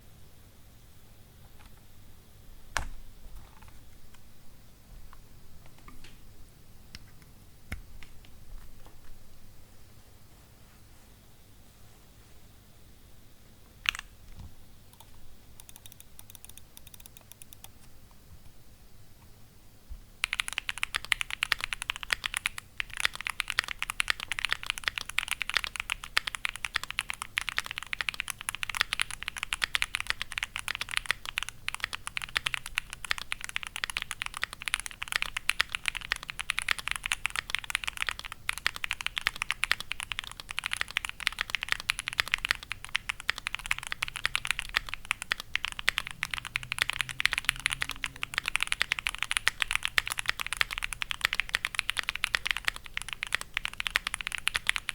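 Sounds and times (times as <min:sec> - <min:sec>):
fast mechanical keyboard typing: 0:13.8 - 0:14.1, 0:14.9 - 0:17.7, 0:20.2 - 0:54.9.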